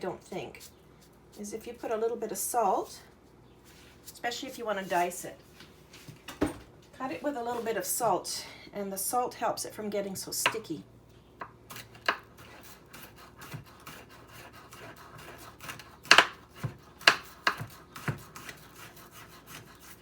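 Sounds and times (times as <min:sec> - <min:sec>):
knife cutting garlic: 0:11.4 - 0:20.0.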